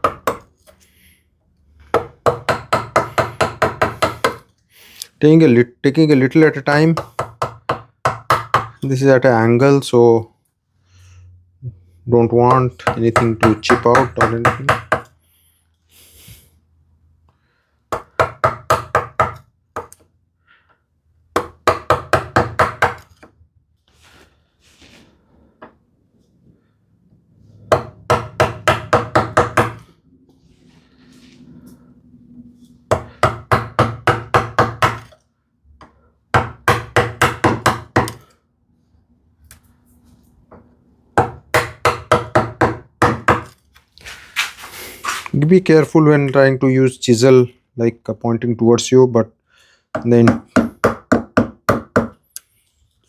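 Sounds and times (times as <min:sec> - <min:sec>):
chisel tapping into wood: 0:00.0 - 0:00.5, 0:01.9 - 0:04.5, 0:07.0 - 0:08.8, 0:12.5 - 0:15.1, 0:21.4 - 0:23.3, 0:27.7 - 0:29.8, 0:35.8 - 0:38.2, 0:50.0 - 0:52.2.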